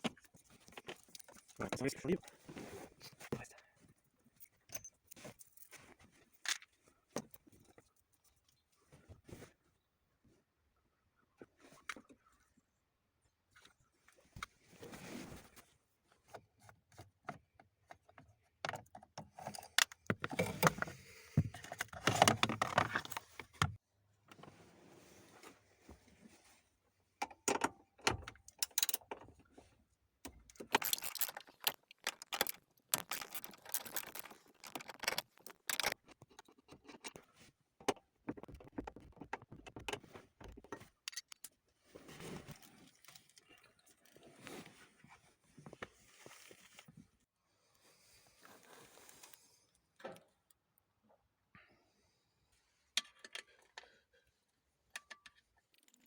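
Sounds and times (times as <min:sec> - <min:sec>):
metal tools clinking: 0:30.6 - 0:36.0.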